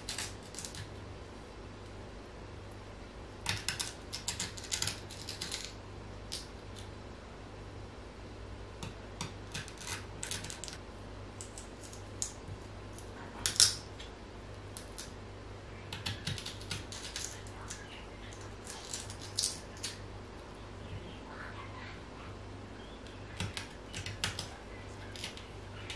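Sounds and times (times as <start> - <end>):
low steady hum: 0.0 - 25.9.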